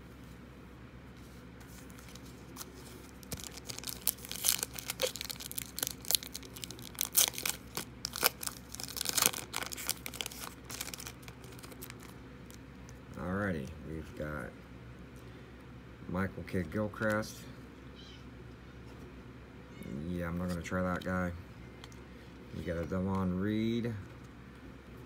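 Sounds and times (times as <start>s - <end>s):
wrapper crinkling: 1.8s - 12.6s.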